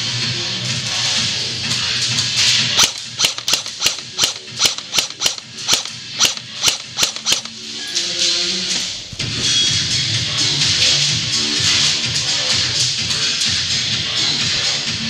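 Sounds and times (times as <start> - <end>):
airsoft gun shots: 2.8 - 7.6.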